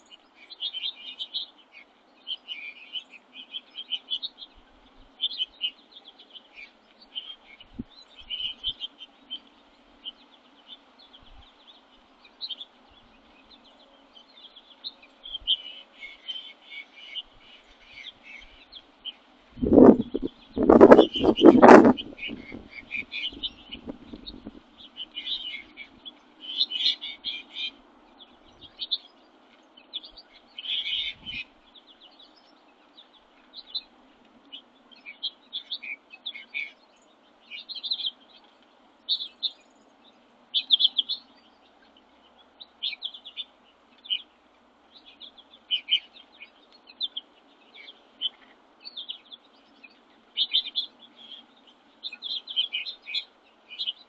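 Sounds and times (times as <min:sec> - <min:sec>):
songbirds chirping: 0:00.0 - 0:54.0.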